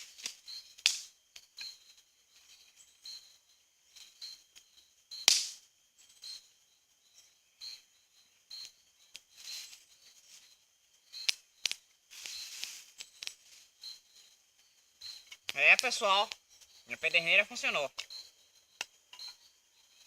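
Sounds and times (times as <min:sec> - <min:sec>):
campfire crackling and popping: 0:00.0 - 0:02.5, 0:03.9 - 0:05.7, 0:08.5 - 0:10.0, 0:11.0 - 0:14.2, 0:15.0 - 0:19.4.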